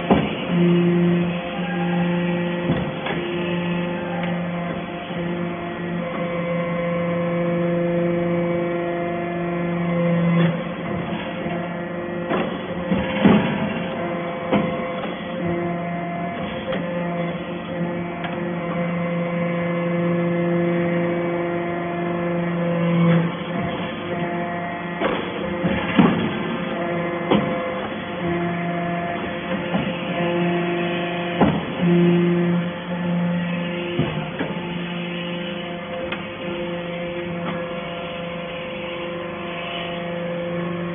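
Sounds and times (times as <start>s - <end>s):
clanks and knocks: 0.0s - 0.4s, 10.4s - 15.4s, 25.0s - 28.4s, 31.2s - 31.8s
hydraulic pump humming: 0.0s - 40.9s.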